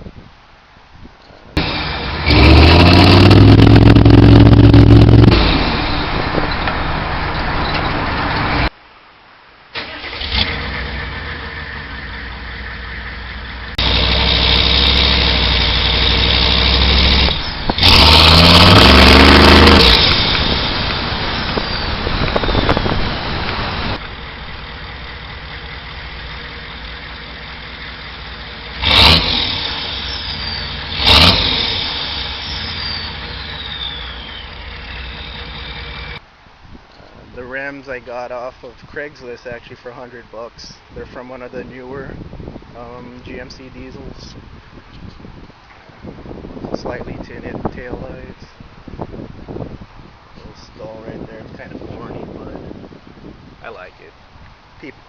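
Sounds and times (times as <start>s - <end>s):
diesel engine revving: 1.6s - 8.7s, 9.8s - 36.2s.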